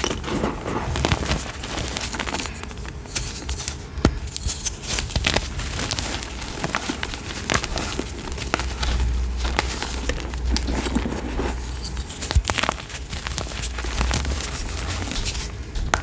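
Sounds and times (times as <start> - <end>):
chalk block crunching: 0.0 - 16.0
low handling rumble: 5.0 - 16.0.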